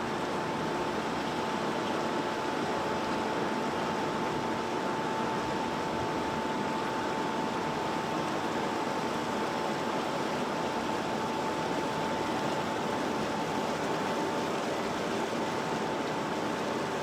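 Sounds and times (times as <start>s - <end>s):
constant high whine: 0.0s - 17.0s
construction machinery running: 0.0s - 17.0s.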